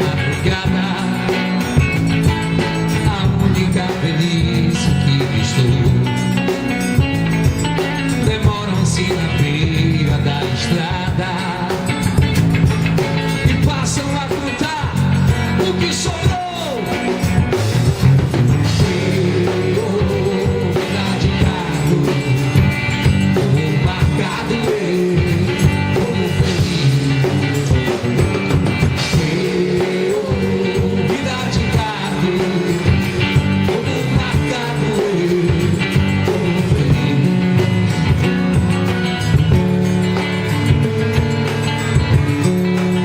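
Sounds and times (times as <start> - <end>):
person singing: 0.0 - 6.1, 8.1 - 12.3, 13.4 - 17.2, 18.6 - 38.3
live band playing: 0.0 - 43.0.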